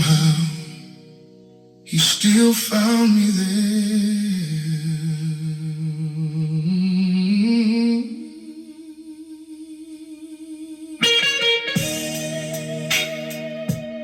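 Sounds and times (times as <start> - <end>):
strummed guitar chords: 11.0 - 14.0
music through car speakers: 11.8 - 14.0.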